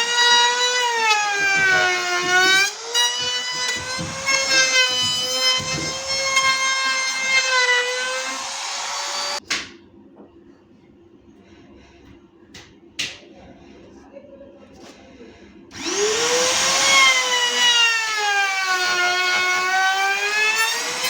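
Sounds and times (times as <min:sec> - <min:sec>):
power tool whining: 0:00.0 - 0:09.4, 0:15.7 - 0:21.0.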